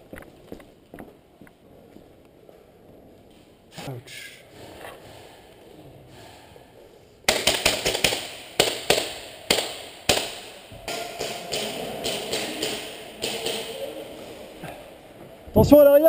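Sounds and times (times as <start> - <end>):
airsoft guns firing: 7.3 - 14.3.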